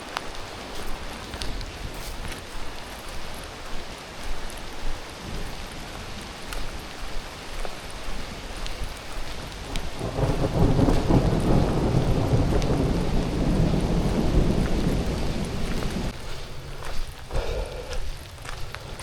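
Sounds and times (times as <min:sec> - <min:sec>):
raindrop ticks: 0:00.0 - 0:19.0
steady rain: 0:00.0 - 0:19.0
thunder rumbling: 0:05.1 - 0:19.0.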